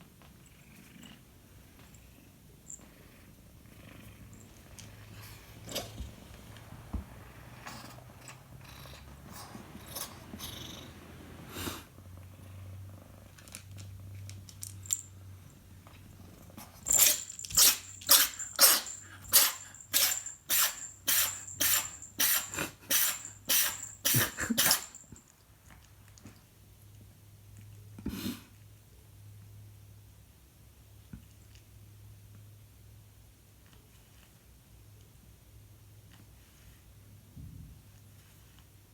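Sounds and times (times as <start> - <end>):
cat purring: 0.4 - 6.3, 7.1 - 13.5.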